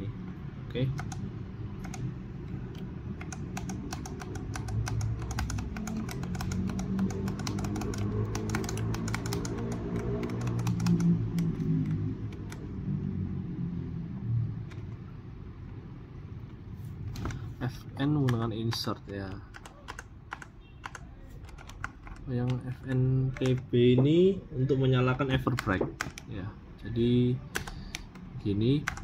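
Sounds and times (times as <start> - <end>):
mechanical keyboard keys clacking: 0.9 - 12.7, 18.0 - 23.7, 25.4 - 26.3, 27.5 - 29.0.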